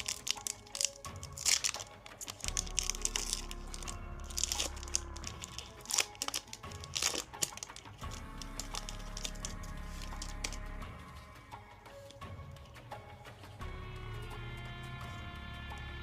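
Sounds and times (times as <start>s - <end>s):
foil wrapper crinkling and tearing: 0.0s - 10.8s
background music: 0.0s - 16.0s.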